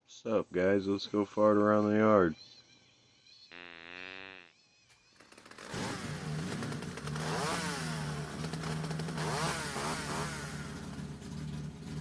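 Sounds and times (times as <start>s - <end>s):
toy truck motor whining: 4.9s - 6.3s.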